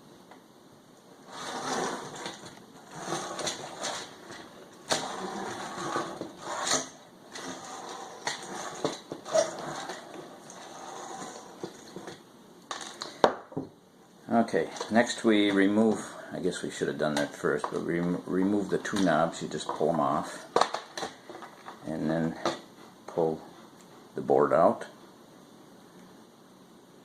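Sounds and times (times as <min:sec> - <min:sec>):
scraping and rattling plastic: 0:01.2 - 0:13.1.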